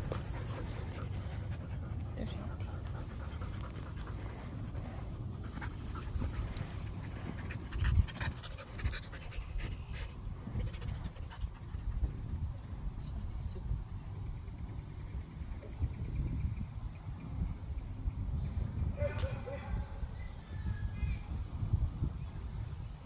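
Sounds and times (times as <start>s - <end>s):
dog panting: 0.0s - 12.3s.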